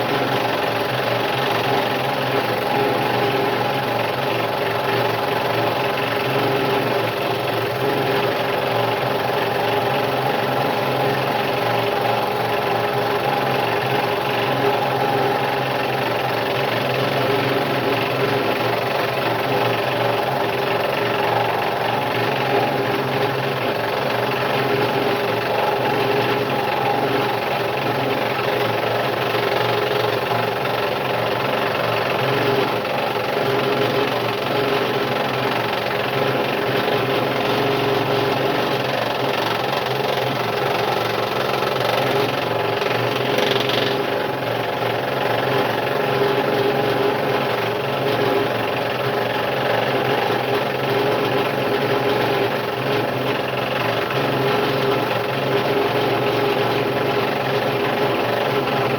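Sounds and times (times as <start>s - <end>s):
scroll saw cutting wood: 39.3s - 44.2s.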